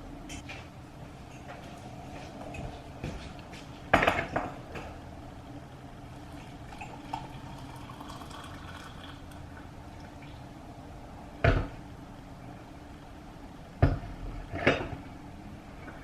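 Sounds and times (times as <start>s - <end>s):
steady low hum: 0.0s - 16.0s
dishes and utensils clattering: 3.9s - 4.9s.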